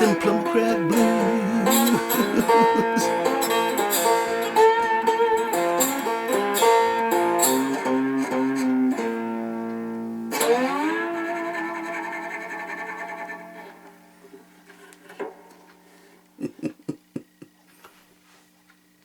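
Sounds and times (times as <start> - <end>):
guitar picked blues notes: 0.0 - 11.8.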